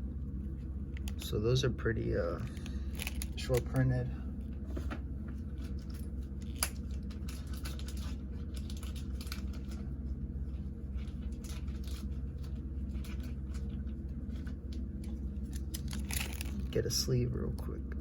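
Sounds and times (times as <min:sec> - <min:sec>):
steady low hum: 0:00.0 - 0:18.0
cards and wrappers rustling: 0:02.5 - 0:03.8, 0:05.5 - 0:09.8, 0:15.4 - 0:16.8.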